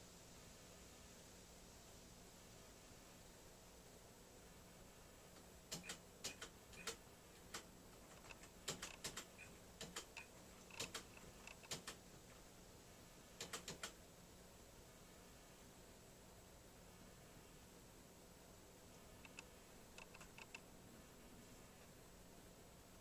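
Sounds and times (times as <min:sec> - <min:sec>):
typewriter keys clicking: 0:05.7 - 0:12.0, 0:13.4 - 0:14.0.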